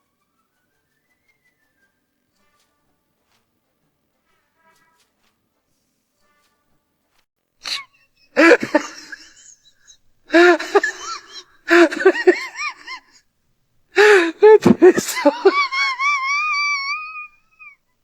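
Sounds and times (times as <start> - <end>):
sneeze-like burst: 7.6 - 9.3, 14.0 - 15.5
wavering vocal cries: 7.6 - 13.2, 14.0 - 17.8.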